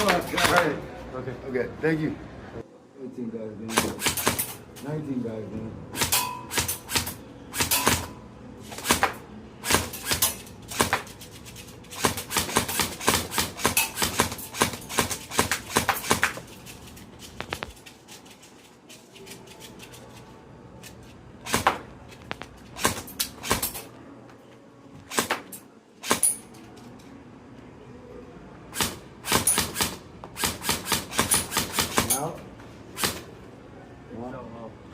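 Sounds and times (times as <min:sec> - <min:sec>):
airsoft gun shots: 0:03.7 - 0:04.6, 0:06.0 - 0:11.1, 0:12.0 - 0:16.4, 0:21.4 - 0:21.8, 0:25.1 - 0:26.4, 0:28.7 - 0:32.3, 0:33.0 - 0:33.3.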